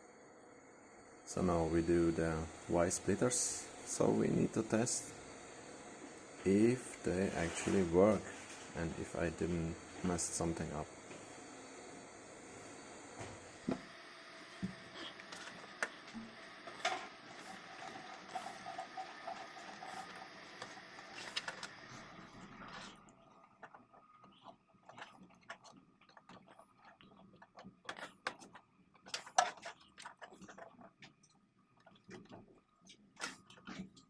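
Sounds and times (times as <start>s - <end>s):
steady hiss: 0.0s - 22.7s.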